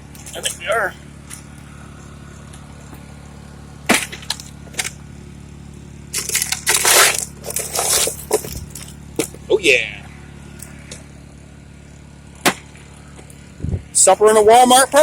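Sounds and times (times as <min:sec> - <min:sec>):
generator humming: 0:00.0 - 0:15.0
sharp crack: 0:03.8 - 0:05.0, 0:06.1 - 0:08.3, 0:12.4 - 0:12.9
loud noisy clatter: 0:06.0 - 0:09.4.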